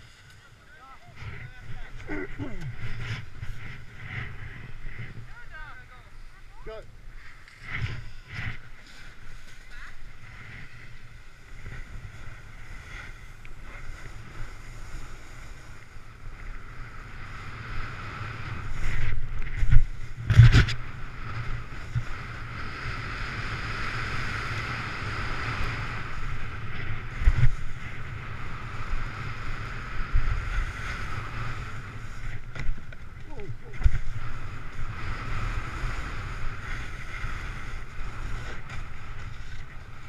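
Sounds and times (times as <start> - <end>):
snowboard scraping on snow: 0.0 - 40.0
wind buffeting microphone: 1.0 - 40.0.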